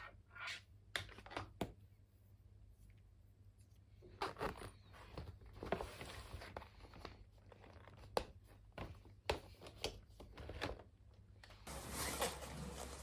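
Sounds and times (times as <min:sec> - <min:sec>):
rustling: 0:11.7 - 0:13.0.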